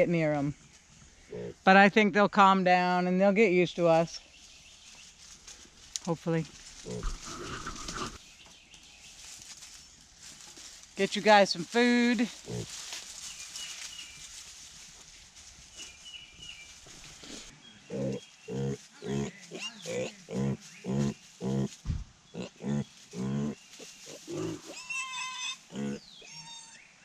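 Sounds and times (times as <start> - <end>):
young pigs grunting: 1.3 - 1.6, 6.8 - 8.2, 12.4 - 12.7, 17.2 - 21.7, 22.3 - 26.8.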